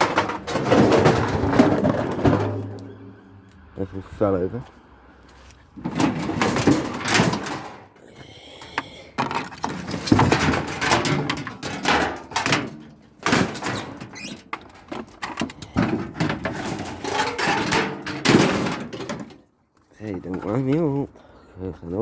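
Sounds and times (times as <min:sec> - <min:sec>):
metal parts knocking and clattering: 0:00.0 - 0:03.4, 0:05.8 - 0:08.0, 0:08.7 - 0:19.4.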